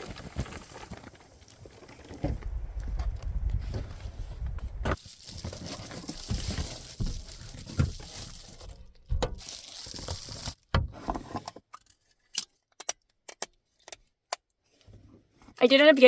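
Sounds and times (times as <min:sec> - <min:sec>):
rustling and crinkling: 0:00.0 - 0:12.4.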